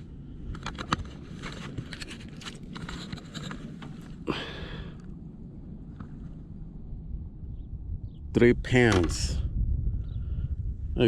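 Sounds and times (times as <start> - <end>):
clicks and rustling of handling: 0.4 - 4.2.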